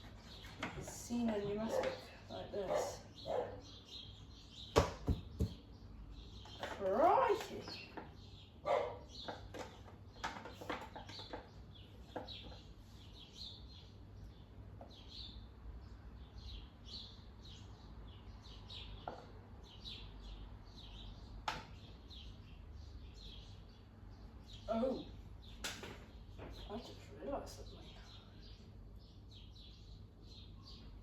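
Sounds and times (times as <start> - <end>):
small birds chirping: 0.0 - 31.0
sharp knocks: 4.8 - 5.6.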